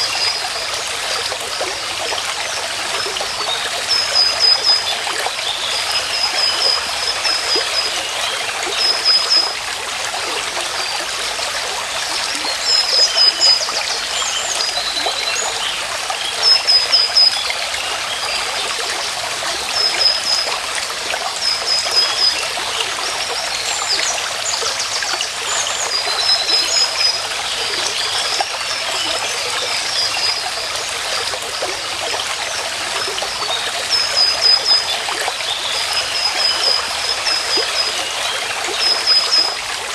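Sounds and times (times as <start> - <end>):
stream over stones: 0.0 - 39.9.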